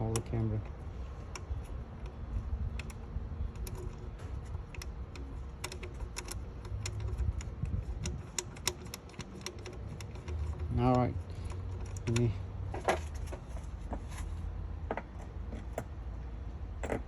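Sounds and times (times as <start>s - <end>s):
light clicks and taps on wiring: 0.0s - 12.4s
camera handling rumble: 1.2s - 15.9s.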